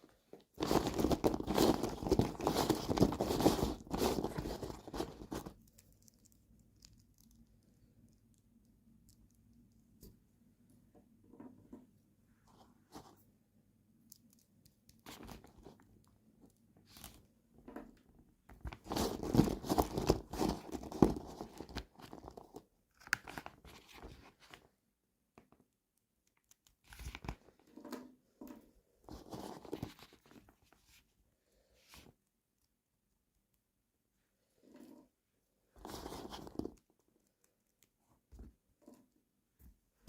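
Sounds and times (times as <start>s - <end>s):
packaging crinkling and tearing: 0.6s - 6.1s, 18.6s - 24.6s.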